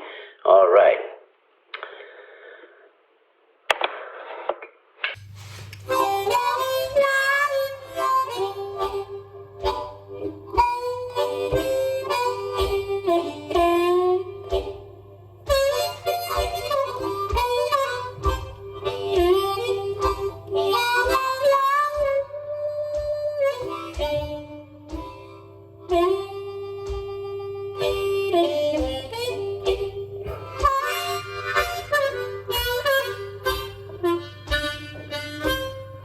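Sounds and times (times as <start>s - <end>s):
blues harmonica melody: 5.2s - 36.0s.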